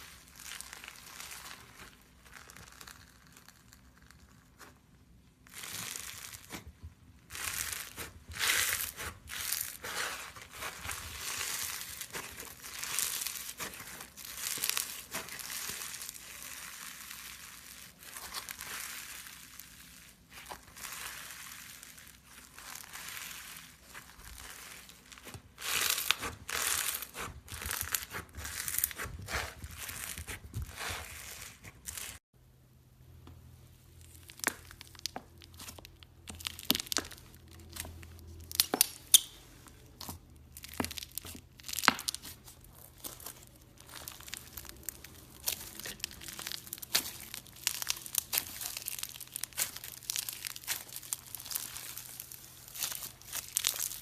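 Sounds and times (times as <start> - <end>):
crunchy slime crackling: 0.0 - 32.3, 33.8 - 54.0.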